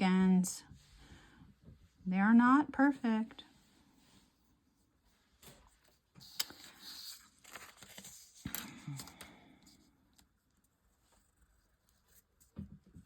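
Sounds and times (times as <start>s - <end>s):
paper rustling and scraping: 5.1s - 9.1s.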